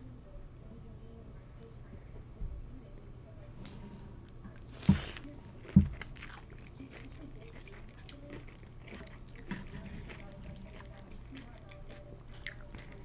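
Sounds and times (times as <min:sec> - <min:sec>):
chewing and mouth clicks: 0:03.6 - 0:13.0.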